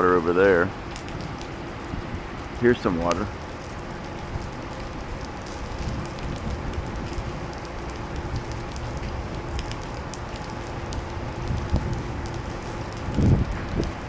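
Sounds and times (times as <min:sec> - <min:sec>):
light rain patter: 0:00.0 - 0:14.0
low rumble: 0:00.0 - 0:14.0
drip ticks: 0:03.1 - 0:14.0.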